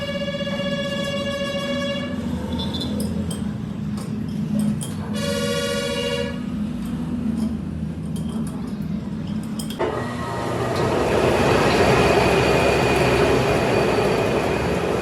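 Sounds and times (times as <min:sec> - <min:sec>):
horn-like honk: 0:00.0 - 0:02.4, 0:05.2 - 0:06.4.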